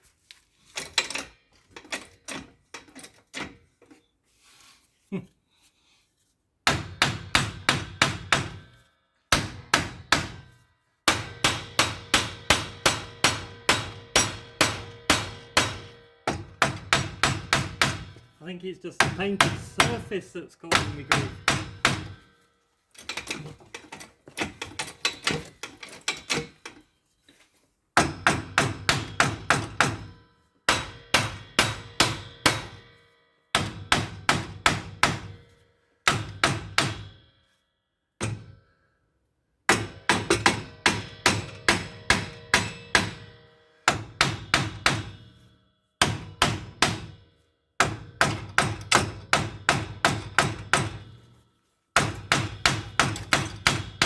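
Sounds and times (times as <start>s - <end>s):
hammer striking metal: 6.7s - 18.3s, 19.0s - 22.4s, 28.0s - 33.0s, 33.6s - 35.4s, 36.1s - 37.3s, 39.7s - 47.2s, 47.8s - 51.2s, 52.0s - 54.0s.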